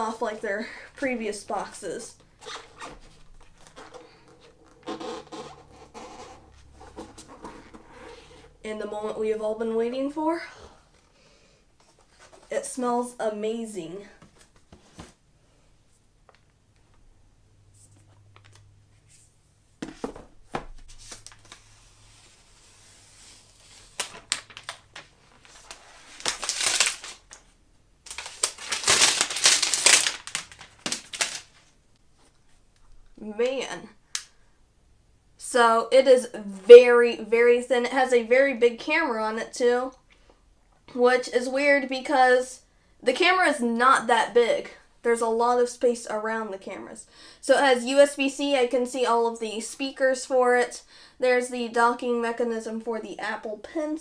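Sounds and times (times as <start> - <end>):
cardboard box lid scraping: 2.6 - 8.5
packaging wrap crinkling: 23.6 - 31.8.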